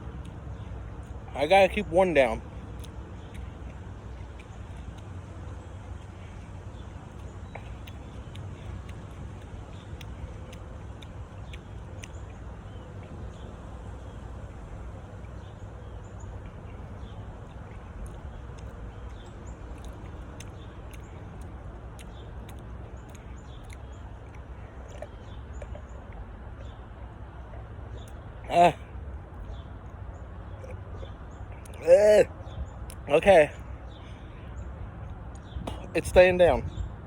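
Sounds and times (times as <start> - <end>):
low background hum: 0.0 - 37.0
faint small clicks and chirps: 2.5 - 28.3.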